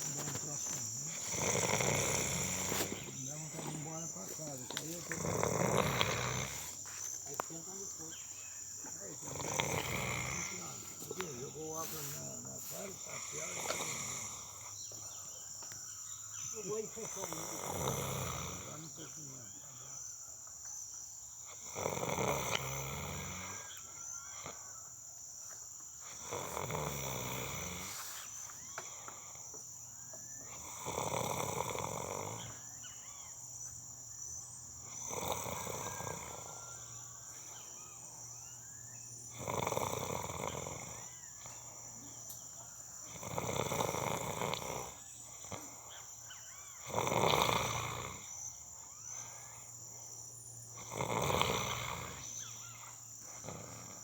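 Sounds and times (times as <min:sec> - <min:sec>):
person snoring: 0:00.0 - 0:06.9, 0:09.1 - 0:14.7, 0:17.0 - 0:19.0, 0:21.5 - 0:23.8, 0:26.1 - 0:28.4, 0:30.5 - 0:32.6, 0:34.8 - 0:36.9, 0:39.3 - 0:41.2, 0:43.0 - 0:45.8, 0:46.8 - 0:48.4, 0:50.8 - 0:52.4
insects chirring: 0:00.0 - 0:54.0.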